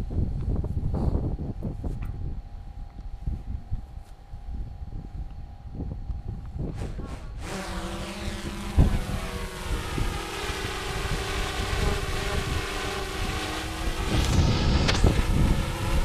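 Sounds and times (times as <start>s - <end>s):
wind buffeting microphone: 0.0s - 16.0s
drone propellers whining: 6.6s - 16.0s.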